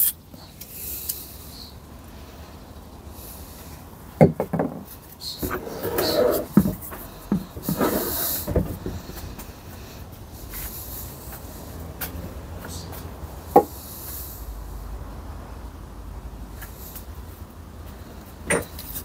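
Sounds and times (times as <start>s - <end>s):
short hissing: 7.7s - 8.5s.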